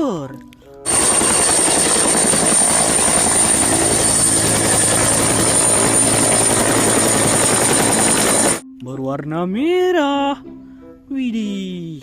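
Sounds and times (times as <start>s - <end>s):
helicopter engine and rotor: 0.9s - 8.6s.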